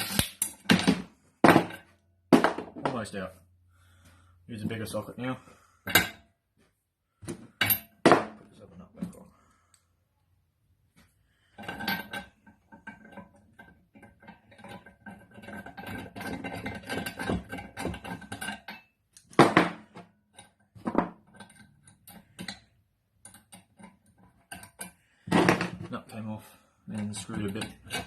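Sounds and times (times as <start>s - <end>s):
metal tools clinking and scraping: 5.8s - 6.3s, 11.4s - 19.2s, 20.3s - 28.0s.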